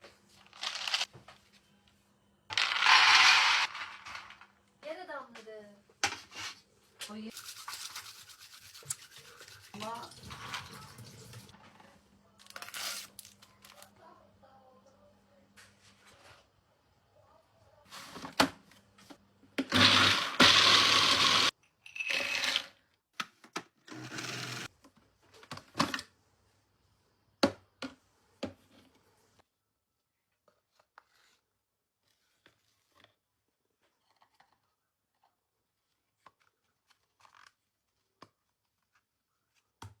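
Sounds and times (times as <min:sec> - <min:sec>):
blender grinding nuts: 0:02.5 - 0:04.1, 0:19.6 - 0:22.8, 0:23.9 - 0:24.7.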